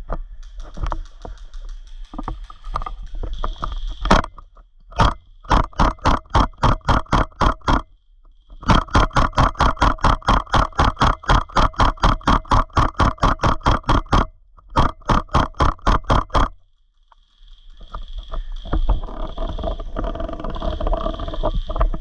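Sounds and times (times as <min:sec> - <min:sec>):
scattered knocks: 0:04.0 - 0:04.4, 0:05.0 - 0:07.9, 0:08.6 - 0:16.6
airsoft gun firing: 0:05.0 - 0:07.8, 0:08.6 - 0:16.6.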